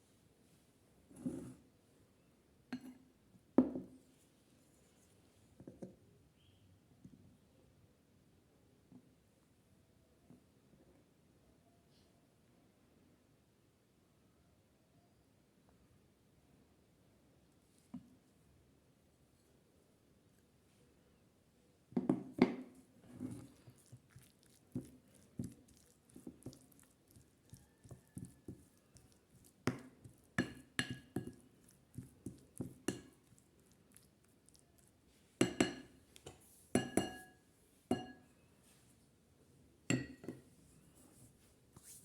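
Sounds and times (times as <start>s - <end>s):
glass clinking: 35.4s - 35.9s, 36.8s - 38.2s, 39.9s - 40.4s
glassware and utensils knocking: 35.4s - 35.9s, 36.8s - 37.3s, 39.9s - 40.4s.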